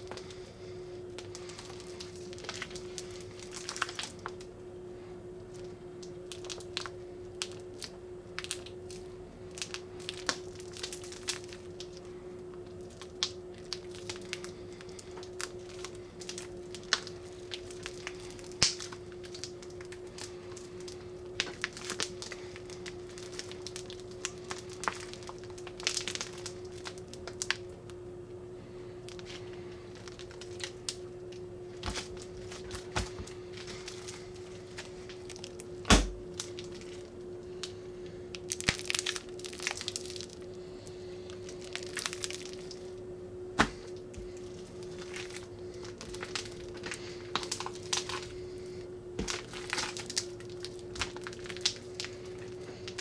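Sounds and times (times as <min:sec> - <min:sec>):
faint steady hum: 0:00.0 - 0:53.0
crackles and pops of trapped air: 0:12.9 - 0:27.7, 0:38.4 - 0:40.4
slime squeezed and stretched: 0:38.4 - 0:40.4, 0:43.6 - 0:48.4, 0:49.2 - 0:53.0.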